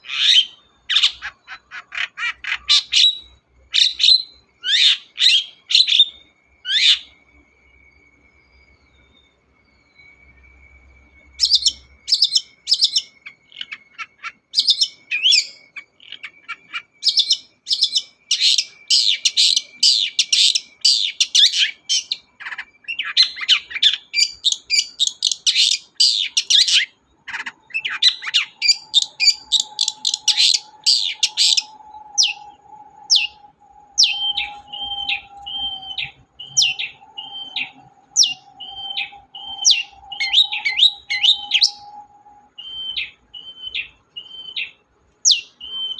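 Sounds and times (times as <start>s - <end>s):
shrike chattering song: 11.4s - 44.7s.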